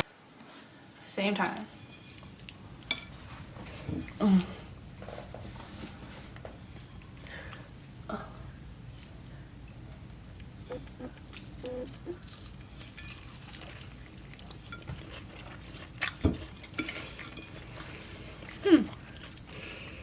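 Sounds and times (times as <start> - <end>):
dishes and cutlery clinking: 1.7 - 4.2, 12.3 - 18.6.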